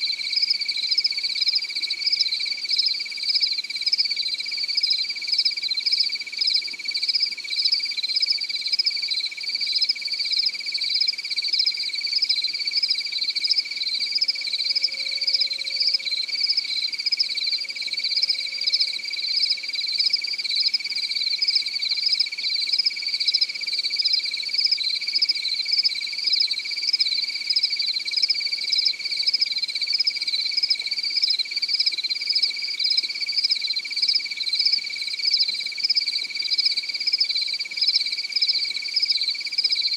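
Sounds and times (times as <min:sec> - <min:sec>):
fast pulsing cricket chirp: 0:00.0 - 0:39.9
cricket high trill: 0:14.3 - 0:16.6.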